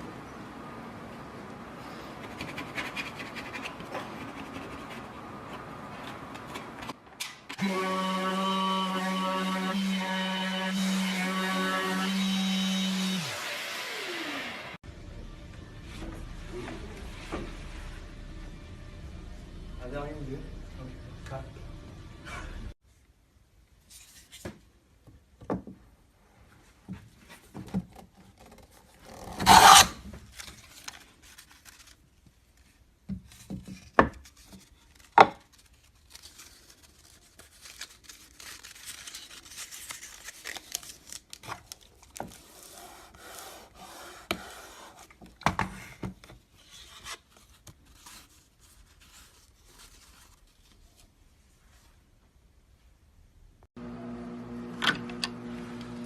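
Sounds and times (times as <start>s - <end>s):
rasping and scraping wood: 29.0s - 30.0s, 42.3s - 45.3s.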